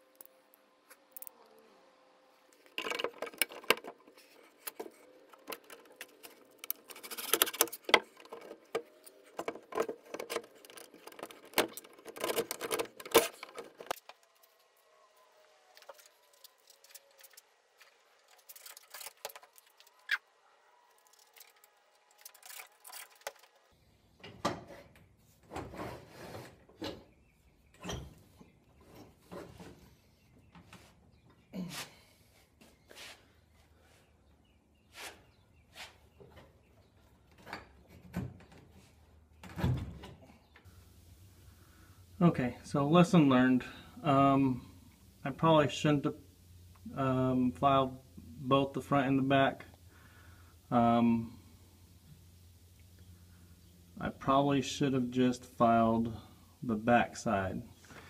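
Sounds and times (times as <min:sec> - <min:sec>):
small metal parts clinking: 0:18.2 - 0:20.1, 0:21.0 - 0:23.6.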